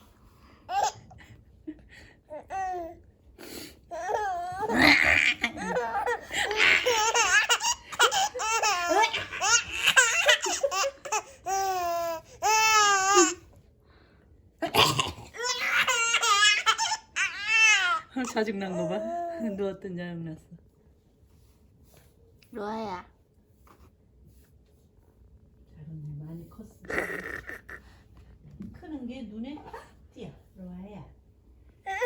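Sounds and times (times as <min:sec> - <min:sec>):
baby laughing: 0:00.7 - 0:01.2, 0:03.9 - 0:13.4, 0:15.4 - 0:18.0.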